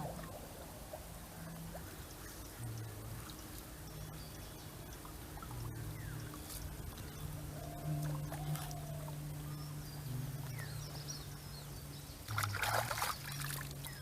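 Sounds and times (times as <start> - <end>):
birds chirping: 0.0 - 14.0
steady low hum: 0.0 - 14.0
water splashing and pouring: 12.3 - 13.9.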